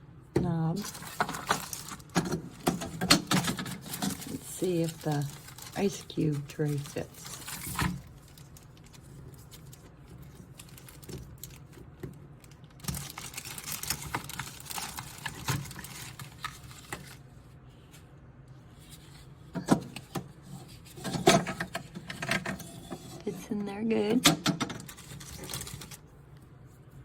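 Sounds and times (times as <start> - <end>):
ice tray rattling: 0.8 - 8.5.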